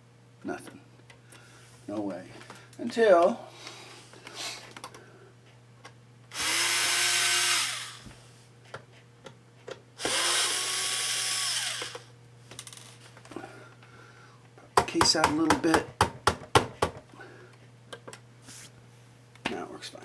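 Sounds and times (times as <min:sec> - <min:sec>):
electric screwdriver running: 0:06.3 - 0:08.1, 0:10.0 - 0:12.1.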